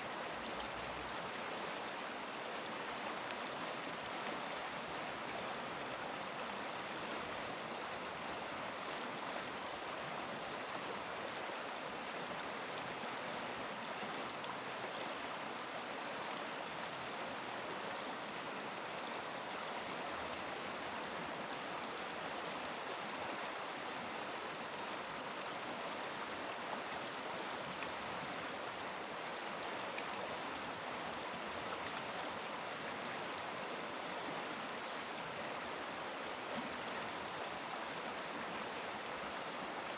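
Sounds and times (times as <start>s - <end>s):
river rushing over stones: 0.0s - 39.9s.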